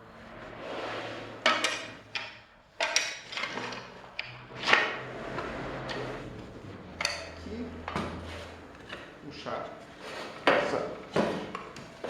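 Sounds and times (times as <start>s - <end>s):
parts scraping and rubbing: 0.0s - 12.0s
hard parts knocking: 1.4s - 12.0s.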